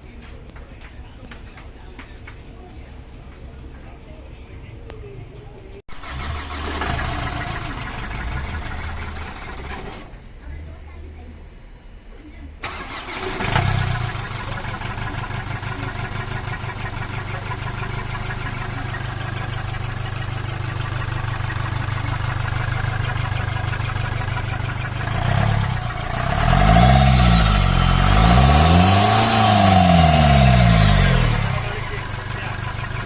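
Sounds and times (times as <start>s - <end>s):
diesel engine idling and revving: 5.9s - 10.6s, 12.6s - 33.0s.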